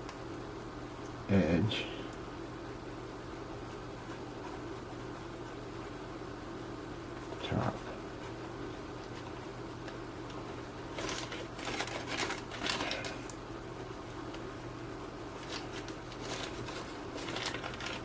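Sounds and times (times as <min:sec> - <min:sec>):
steady low hum: 0:00.0 - 0:18.0
rustles and scrapes of small parts: 0:10.9 - 0:13.4, 0:15.4 - 0:18.0.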